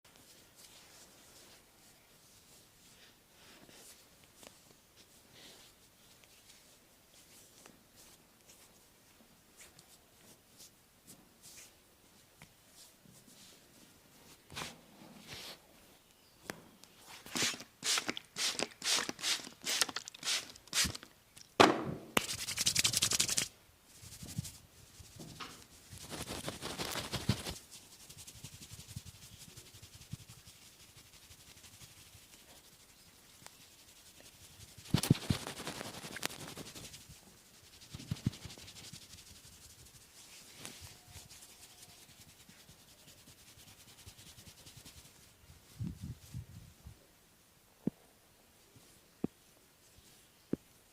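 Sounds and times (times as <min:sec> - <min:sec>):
hands rubbing skin: 0:00.2 - 0:08.9, 0:09.6 - 0:11.8, 0:22.2 - 0:46.4.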